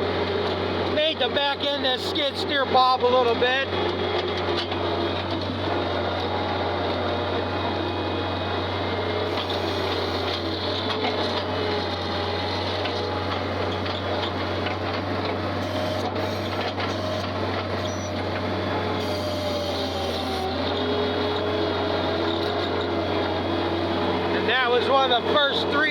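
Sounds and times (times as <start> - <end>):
skid steer engine droning: 0.0 - 25.9.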